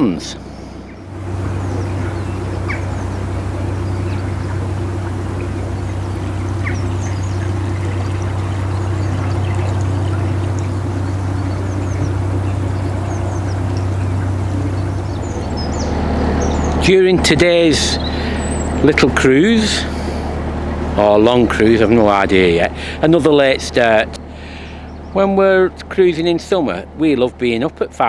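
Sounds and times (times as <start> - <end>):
diesel boat engine humming: 0.0 - 28.0
water churning: 0.0 - 28.0
faint bird chirps: 0.4 - 16.9.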